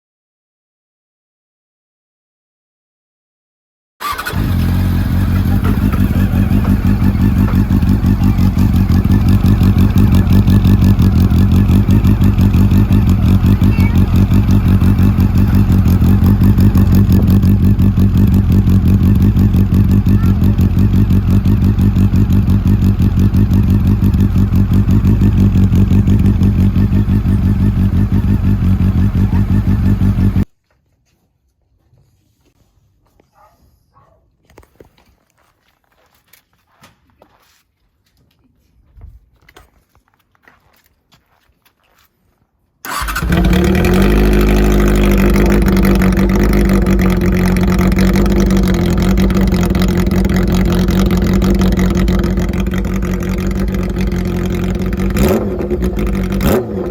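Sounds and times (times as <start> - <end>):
motorcycle engine idling: 4.0 - 30.5, 42.9 - 56.9.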